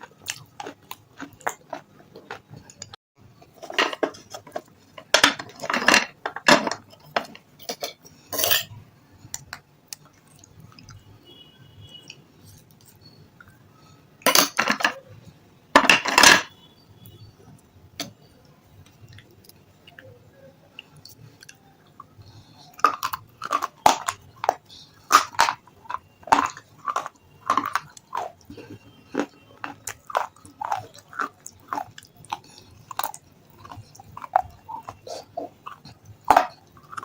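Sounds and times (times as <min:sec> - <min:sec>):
quiet chewing: 0:00.0 - 0:08.2, 0:18.8 - 0:37.0
crunching bites: 0:22.8 - 0:37.0.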